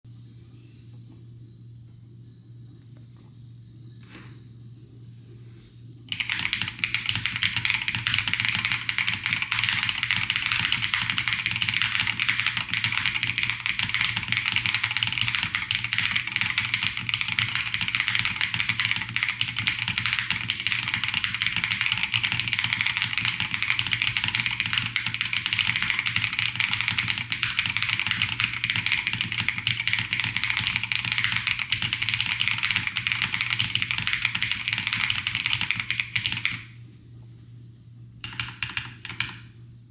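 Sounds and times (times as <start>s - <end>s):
mechanical keyboard typing: 6.1s - 36.7s, 38.2s - 39.5s.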